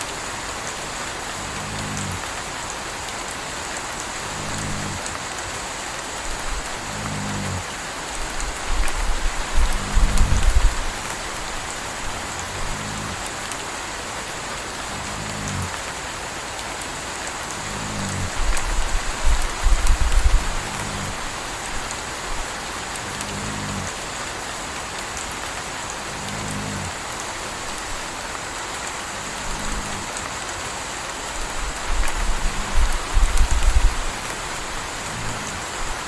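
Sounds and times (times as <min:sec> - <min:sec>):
steady rain falling: 0:00.0 - 0:36.0
puppy snoring softly: 0:01.3 - 0:02.4, 0:04.0 - 0:05.2, 0:06.2 - 0:13.6, 0:14.3 - 0:15.9, 0:17.4 - 0:24.0, 0:25.9 - 0:28.3, 0:29.0 - 0:30.3, 0:31.4 - 0:36.0.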